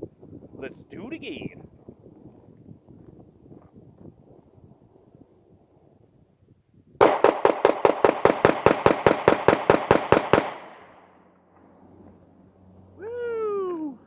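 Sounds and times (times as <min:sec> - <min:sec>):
rapid pistol shots: 0:07.0 - 0:11.0
gunshot echo: 0:07.0 - 0:11.1.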